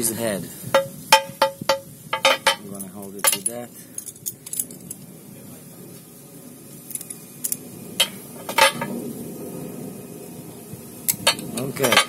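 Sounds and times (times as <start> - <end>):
metal tools clinking on iron: 0.8 - 5.0, 6.9 - 9.0, 11.1 - 12.0.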